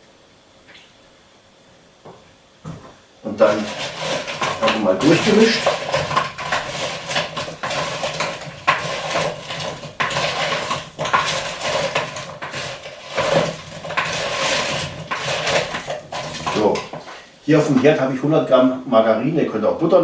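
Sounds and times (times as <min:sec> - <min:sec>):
food clattering and scraping in pot: 0:02.7 - 0:18.0.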